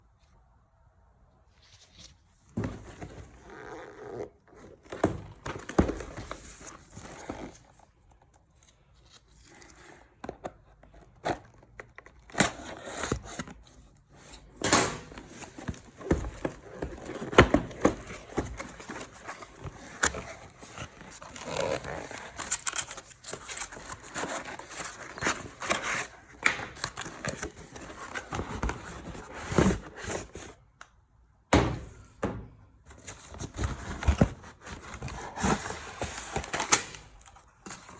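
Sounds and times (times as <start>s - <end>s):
packaging crinkling and rustling: 14.9s - 30.6s, 32.9s - 37.9s
thunks and knocks: 31.5s - 32.6s.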